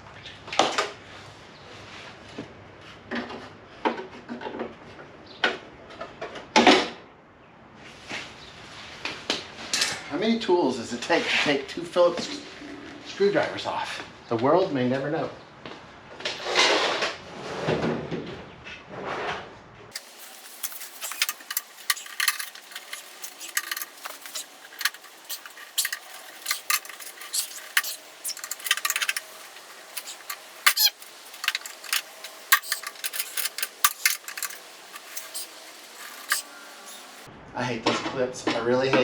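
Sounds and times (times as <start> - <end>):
hand tools clinking on clips: 20.0 - 37.3.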